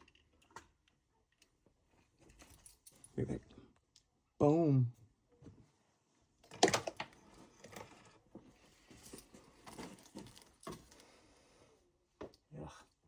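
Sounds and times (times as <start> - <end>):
clicks rattles and rustling: 8.8 - 11.0.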